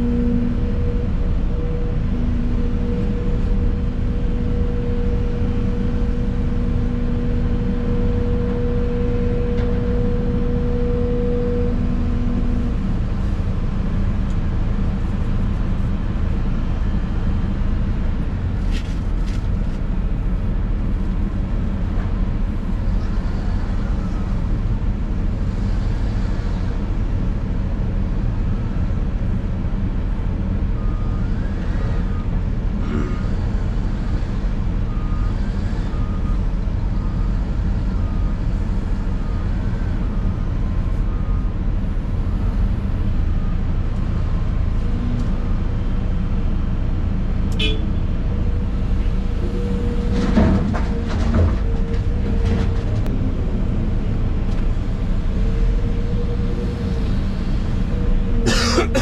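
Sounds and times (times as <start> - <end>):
reversing alarm beeping: 0.0 - 12.8, 34.8 - 41.6
diesel engine running: 0.0 - 59.0
steady whine: 0.0 - 59.0.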